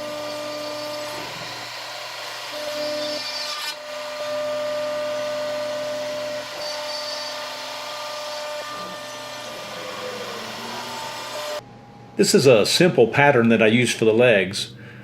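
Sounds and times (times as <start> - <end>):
power tool motor hissing: 0.0 - 11.6.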